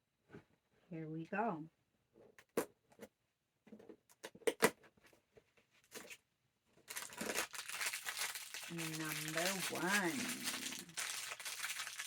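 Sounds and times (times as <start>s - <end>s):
plastic bag crinkling: 6.8s - 12.0s.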